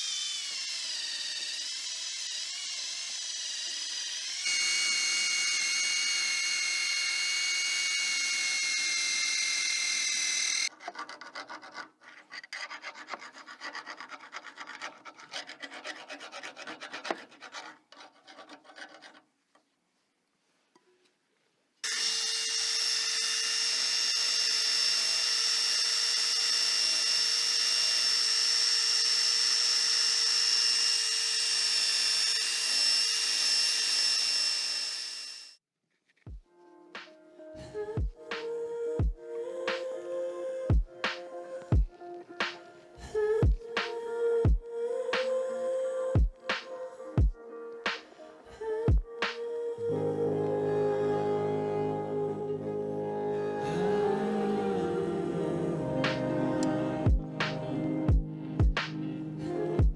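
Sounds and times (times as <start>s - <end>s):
small power tool whining: 0.0s - 10.7s, 21.8s - 35.6s.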